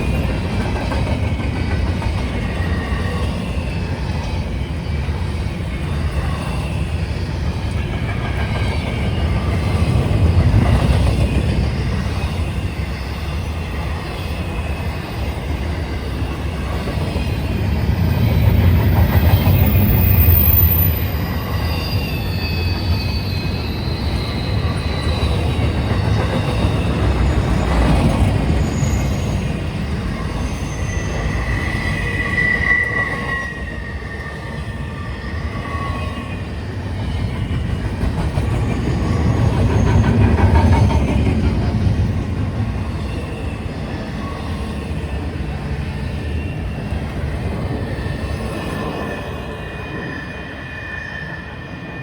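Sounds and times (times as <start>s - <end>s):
freight train rumbling past: 0.0s - 52.0s
train wheel squeals: 0.0s - 52.0s.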